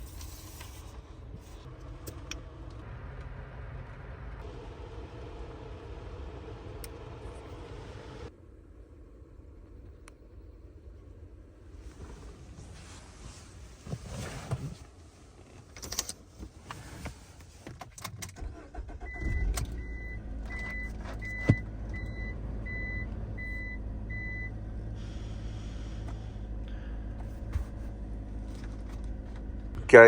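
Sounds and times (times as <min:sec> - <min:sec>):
van engine starting and idling: 0:00.0 - 0:30.0
dashboard warning chime beeping: 0:19.0 - 0:24.5.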